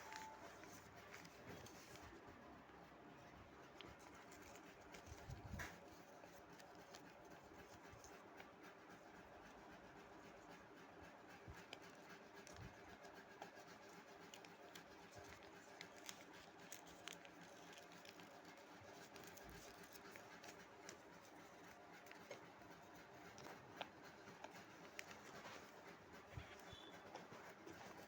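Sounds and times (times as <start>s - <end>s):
paper rustling and folding: 0.0s - 2.3s, 3.1s - 9.1s, 11.6s - 28.0s.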